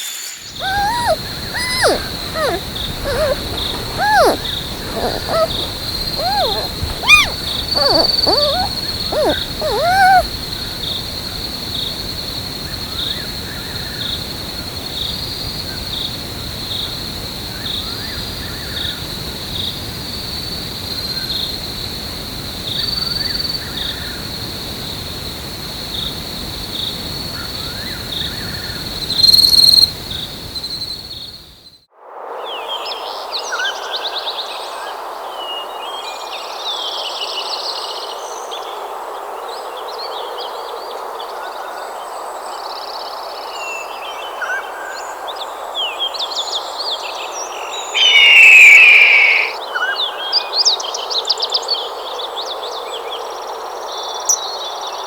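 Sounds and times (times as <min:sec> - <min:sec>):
insect chorus trilling: 0:00.6 - 0:10.3, 0:28.8 - 0:29.9, 0:48.0 - 0:49.6
rising and falling animal calls: 0:00.6 - 0:10.3, 0:48.0 - 0:49.6.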